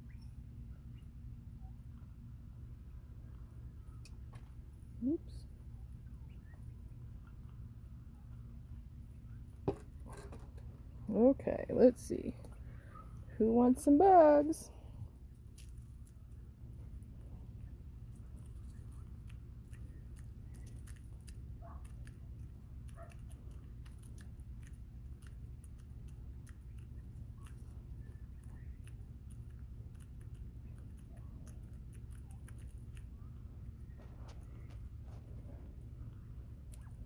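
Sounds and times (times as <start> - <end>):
steady low hum: 0.0 - 37.0
quail pecking clicks and snaps: 3.3 - 4.6, 15.3 - 35.0, 35.9 - 37.0.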